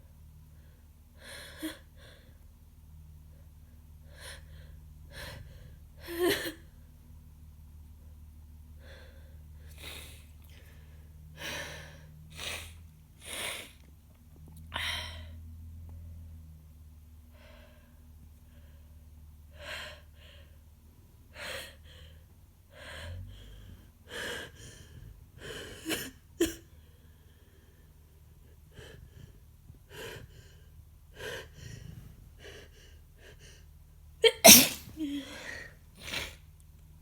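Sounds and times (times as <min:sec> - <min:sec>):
woman sneezing: 0:34.2 - 0:35.3.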